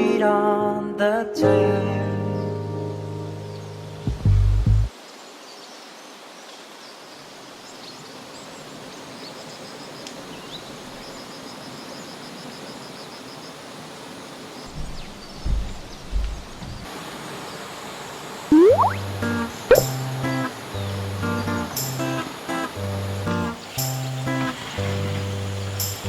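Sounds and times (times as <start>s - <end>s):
low thumps: 14.7s - 16.8s
steady background hiss: 16.8s - 24.8s
bird trill: 18.5s - 19.1s.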